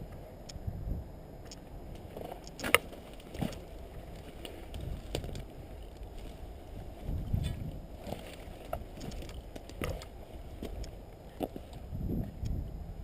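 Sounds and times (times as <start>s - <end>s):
rustling of footsteps: 2.0s - 11.8s.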